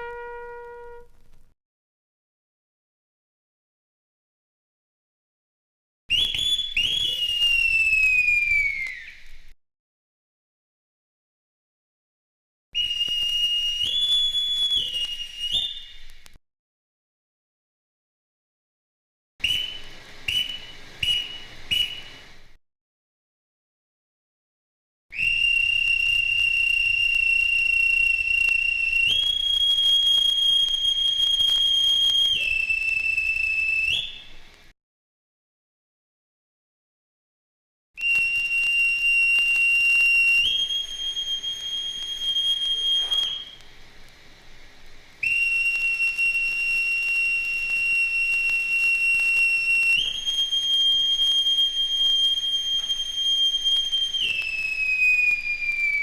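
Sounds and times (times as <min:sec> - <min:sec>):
piercing whistle tone: 0:00.0 - 0:01.1, 0:06.1 - 0:09.6, 0:12.8 - 0:16.3, 0:19.4 - 0:22.5, 0:25.1 - 0:34.5, 0:38.0 - 0:43.8, 0:45.2 - 0:56.0.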